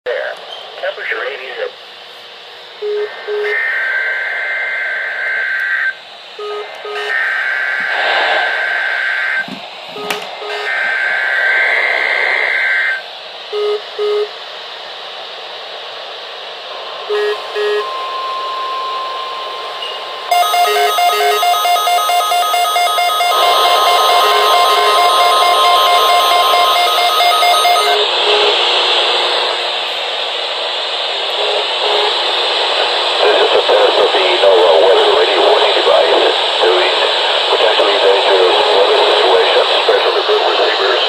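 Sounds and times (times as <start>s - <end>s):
steady tone: 16.7s - 28.8s
harsh digital data screech: 20.3s - 28.1s
rapidly pulsing alert tone: 20.3s - 28.1s
receiver hiss: 20.3s - 41.0s.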